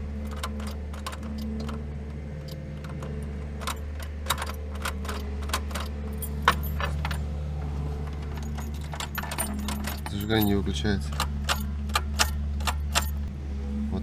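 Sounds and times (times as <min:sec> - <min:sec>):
car keys jangling and clicking: 0:00.0 - 0:13.3
low electrical hum: 0:00.0 - 0:14.0.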